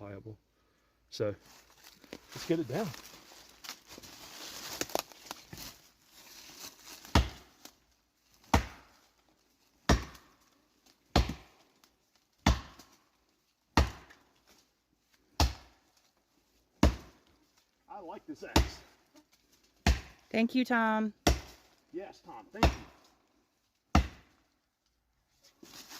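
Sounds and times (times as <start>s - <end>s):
axe chopping wood: 6.9s - 7.6s, 8.4s - 9.0s, 9.8s - 10.4s, 11.1s - 11.6s, 12.4s - 13.0s, 13.7s - 14.3s, 15.3s - 15.8s, 16.8s - 17.2s, 18.5s - 19.0s, 19.8s - 20.2s, 21.2s - 21.7s, 22.5s - 23.0s, 23.9s - 24.4s.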